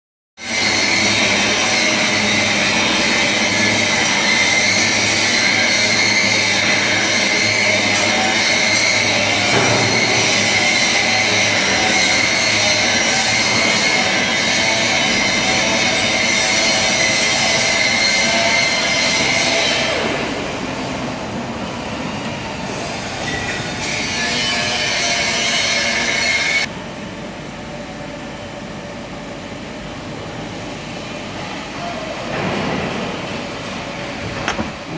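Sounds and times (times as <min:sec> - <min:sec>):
lathe drilling with high whine: 0:00.4 - 0:26.7.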